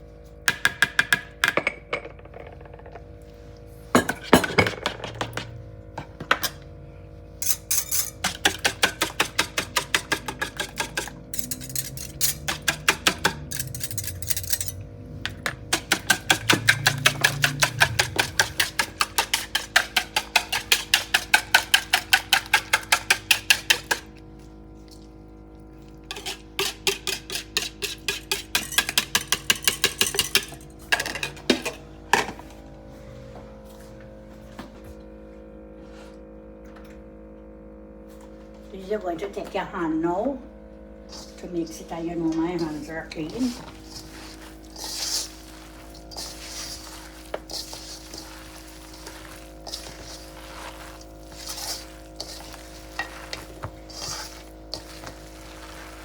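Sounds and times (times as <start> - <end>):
utensil clinking against bowl: 7.4 - 24.0, 26.0 - 32.3, 41.1 - 56.0.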